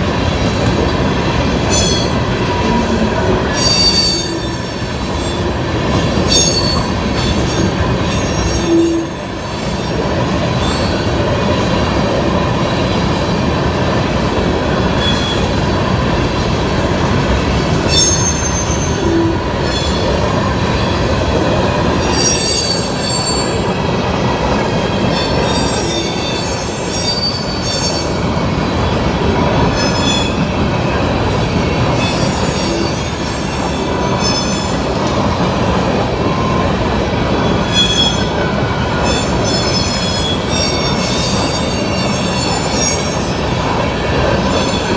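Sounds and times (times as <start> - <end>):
train wheels rumbling on rail: 0.0 - 44.9
high-pitched wheel squeals: 3.4 - 11.1, 17.9 - 20.1, 22.0 - 23.8, 25.1 - 28.2, 31.9 - 35.1, 37.5 - 43.6.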